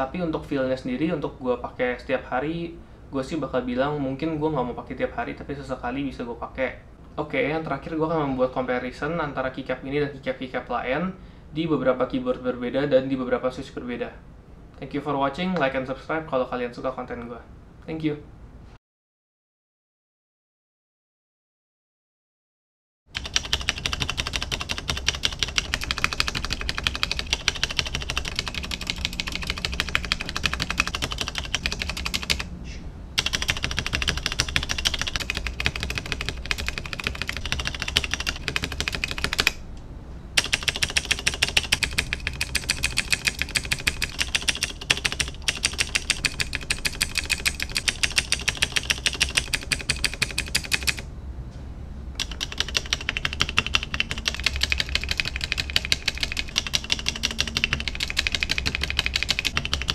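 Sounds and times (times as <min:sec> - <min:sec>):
fast typing on mechanical keyboard: 0:23.2 - 0:32.5, 0:33.2 - 0:39.6, 0:40.4 - 0:51.0, 0:52.2 - 0:59.9.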